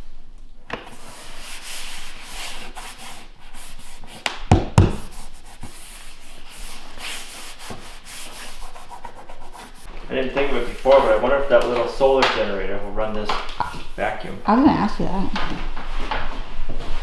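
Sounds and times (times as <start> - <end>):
sharp knocks: 4.5 - 5.1
flooring planks scraping: 10.4 - 13.6.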